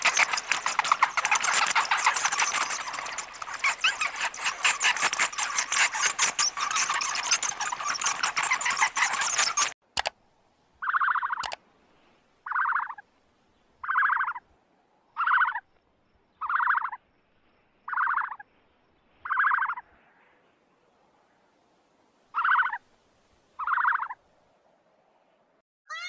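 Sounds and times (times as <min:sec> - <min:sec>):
sharp click: 0:10.0 - 0:10.2, 0:11.4 - 0:11.6.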